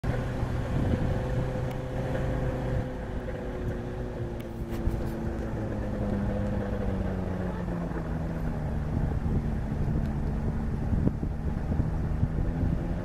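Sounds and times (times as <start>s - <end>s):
off-road vehicle engine running: 0.0s - 13.0s.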